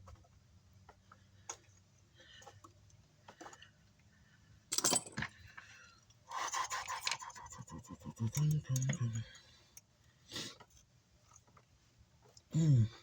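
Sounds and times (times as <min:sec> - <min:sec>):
metal tools clinking on metal: 0:04.7 - 0:05.3.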